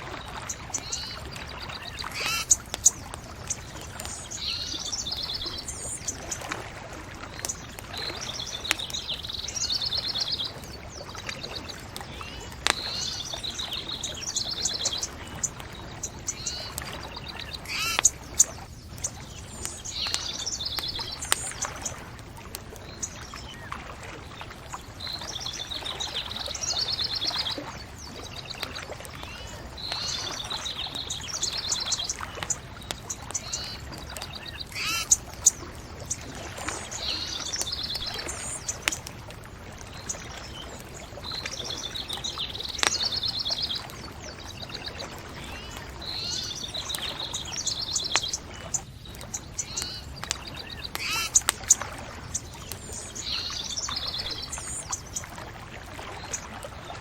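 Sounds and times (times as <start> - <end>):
outdoor noise: 0.0 - 57.0
bonfire crackling and popping: 0.3 - 25.7, 28.8 - 46.0, 46.6 - 53.2
songbird trilling: 0.4 - 6.4, 11.3 - 22.1, 29.2 - 39.0, 44.5 - 55.2.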